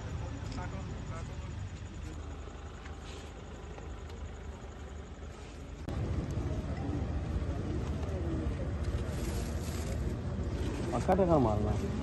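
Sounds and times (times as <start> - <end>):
low rumbling background noise: 0.0 - 12.0.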